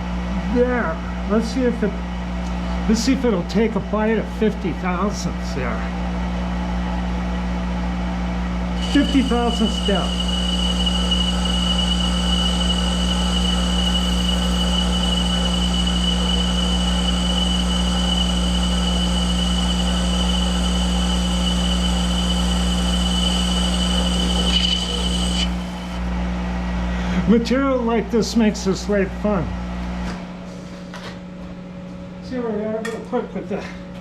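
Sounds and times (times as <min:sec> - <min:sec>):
high whine: 0:08.7 - 0:26.1
metal lathe humming: 0:08.8 - 0:26.0.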